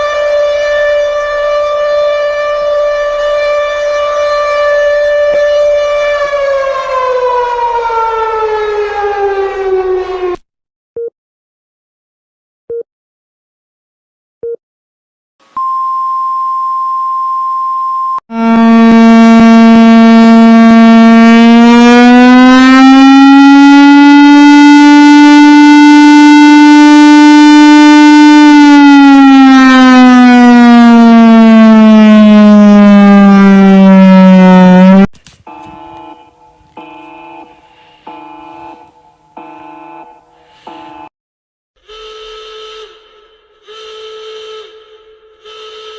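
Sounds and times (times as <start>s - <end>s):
steady high alarm tone: 15.6s - 41.1s
buzzy siren tone: 18.3s - 41.1s, 41.8s - 45.9s.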